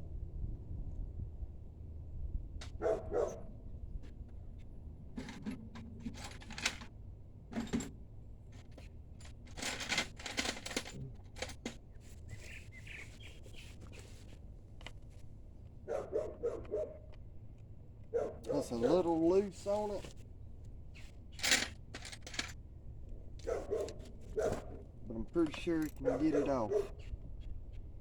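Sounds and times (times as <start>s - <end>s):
dog barking: 2.8s - 3.5s, 15.8s - 17.1s, 18.1s - 19.1s, 23.4s - 24.8s, 26.0s - 27.0s
hand tools clattering on metal: 9.3s - 11.8s, 21.4s - 22.6s, 25.3s - 26.7s.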